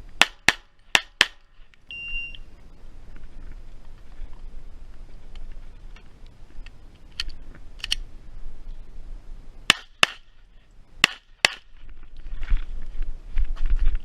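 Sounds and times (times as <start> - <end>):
pistol shots: 9.7 - 10.3, 11.0 - 11.6.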